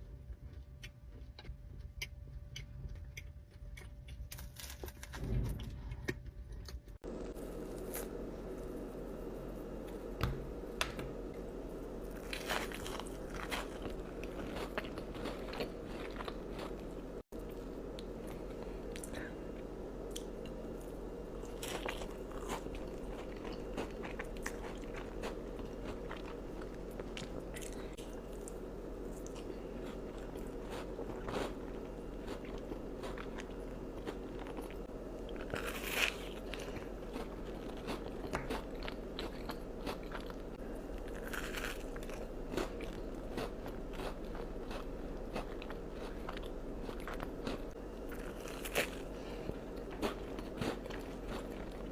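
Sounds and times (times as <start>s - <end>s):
steady low hum: 0.0s - 51.9s
crunchy chewing: 11.4s - 51.9s.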